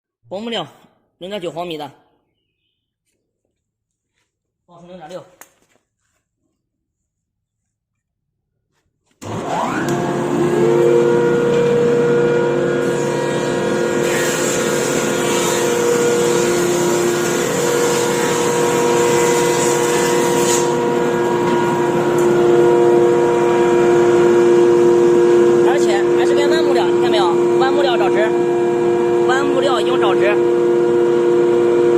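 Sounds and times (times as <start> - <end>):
electric planer motor whining: 9.2 - 31.9
planer blades cutting wood: 9.2 - 31.9.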